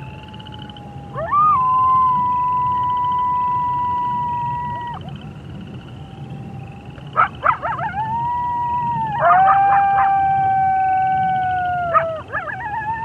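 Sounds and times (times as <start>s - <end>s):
dogs howling: 0.0s - 5.2s, 7.0s - 13.0s
dog yelps: 7.2s - 10.5s, 11.1s - 13.0s.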